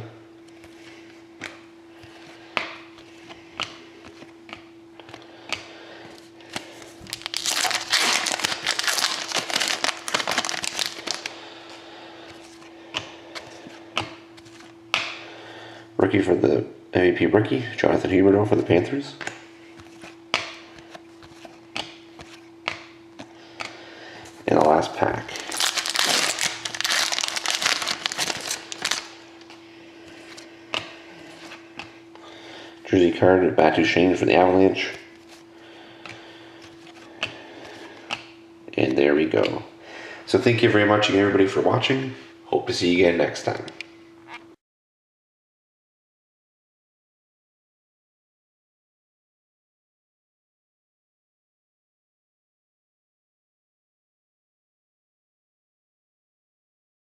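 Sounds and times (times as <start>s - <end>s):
faint steady hum: 0.0s - 44.6s
foil wrapper tearing and crinkling: 6.8s - 11.4s, 25.3s - 29.2s.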